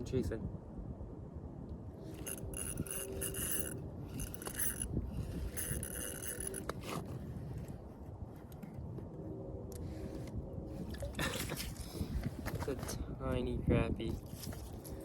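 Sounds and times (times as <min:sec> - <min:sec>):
fishing reel cranking: 0:02.1 - 0:06.9.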